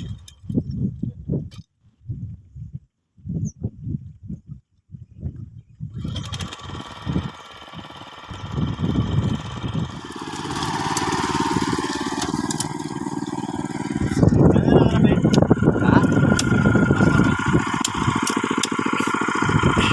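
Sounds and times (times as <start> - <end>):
engine starting and running: 0.0 - 0.8, 5.9 - 19.9.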